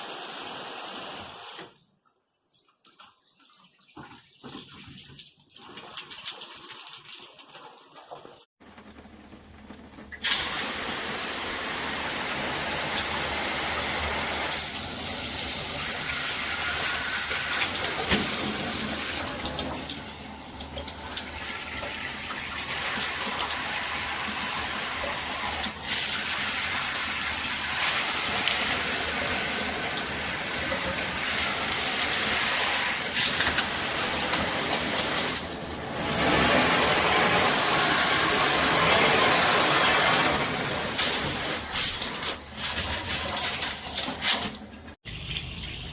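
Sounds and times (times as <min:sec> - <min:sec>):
shower head spraying water: 0:22.7 - 0:44.6.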